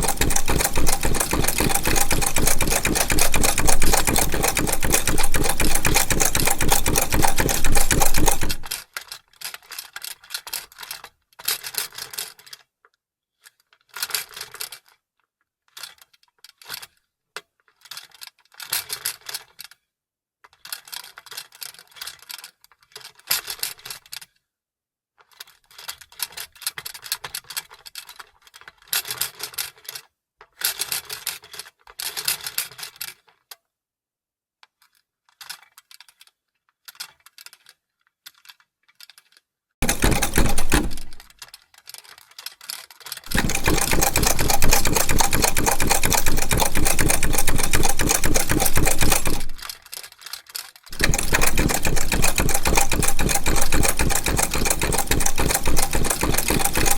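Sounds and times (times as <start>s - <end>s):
sewing machine stitching: 0.0s - 8.8s, 39.8s - 41.3s, 43.3s - 49.9s, 50.9s - 56.9s.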